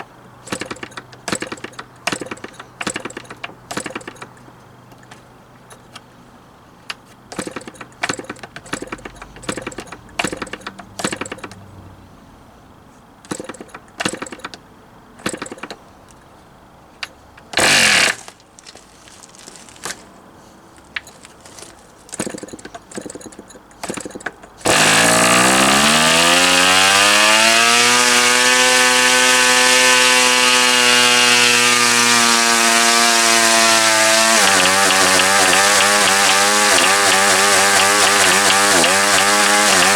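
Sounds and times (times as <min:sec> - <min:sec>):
model engine clicks and knocks: 0:00.0 - 0:06.2, 0:06.8 - 0:12.0, 0:13.2 - 0:16.4, 0:17.0 - 0:18.8, 0:20.8 - 0:27.0, 0:27.7 - 0:39.9
model engine running at high speed: 0:24.7 - 0:39.9.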